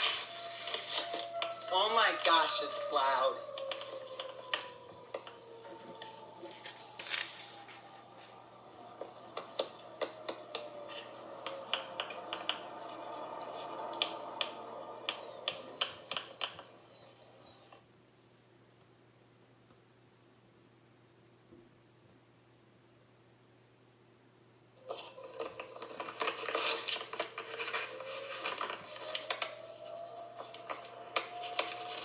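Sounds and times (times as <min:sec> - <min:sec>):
tornado siren winding down: 0:00.0 - 0:17.8, 0:24.8 - 0:32.0.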